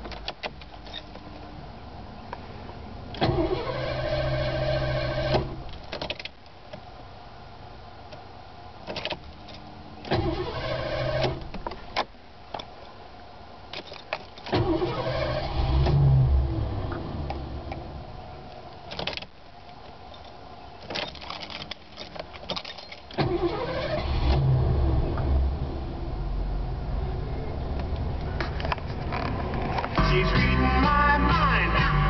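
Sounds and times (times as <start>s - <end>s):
starter motor cranking: 10.1s - 11.5s, 14.5s - 16.2s, 22.9s - 24.7s.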